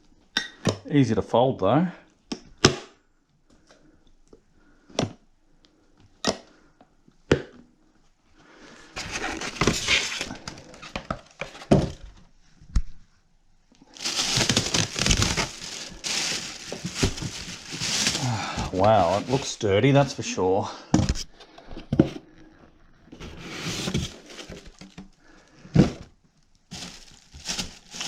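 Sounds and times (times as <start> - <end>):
wrapping material rustling: 13.8 - 20.3, 26.7 - 28.0.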